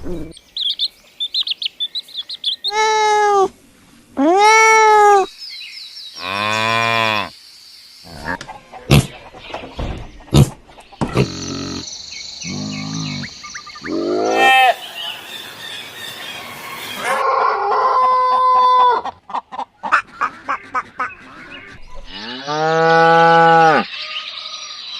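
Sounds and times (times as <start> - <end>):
bird calls: 0.0 - 3.5, 7.9 - 17.2, 19.0 - 22.6
chicken calls: 8.1 - 24.1
held two-tone animal call: 12.4 - 15.0.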